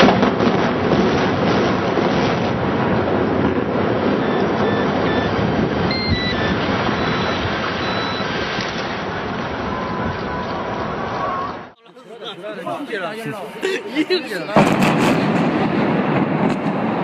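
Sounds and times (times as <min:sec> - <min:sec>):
building collapsing roar: 0:14.6 - 0:17.0.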